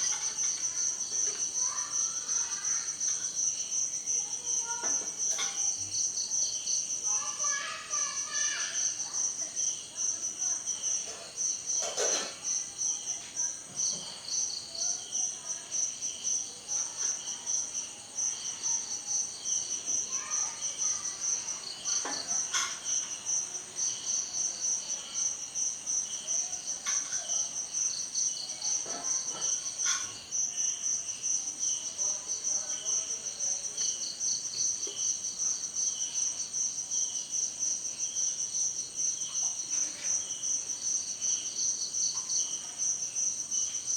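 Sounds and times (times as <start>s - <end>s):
crickets and insects chirping: 0.0s - 43.9s.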